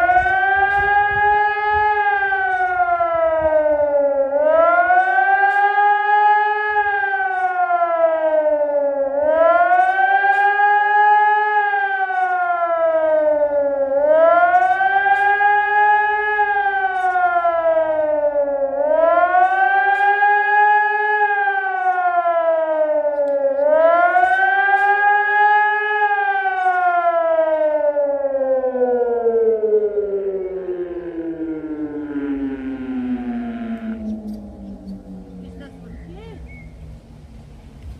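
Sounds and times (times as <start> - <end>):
electronic warning siren wailing: 0.0 - 37.9.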